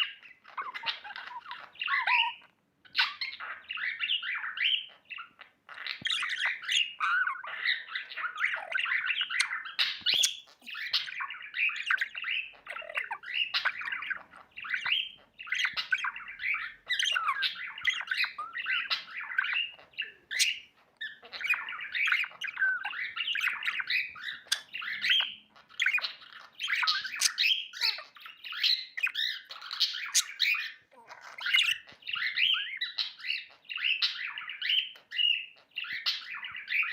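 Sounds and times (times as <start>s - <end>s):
budgerigar chirping and warbling: 0.0s - 36.9s.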